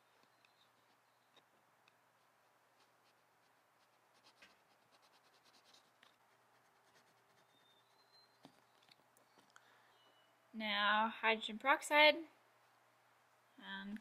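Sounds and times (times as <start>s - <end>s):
faint scratching: 2.1s - 9.5s.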